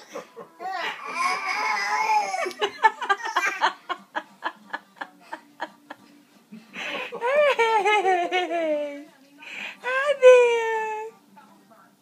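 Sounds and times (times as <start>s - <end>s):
baby laughing: 0.0s - 3.8s
baby crying: 0.6s - 2.6s.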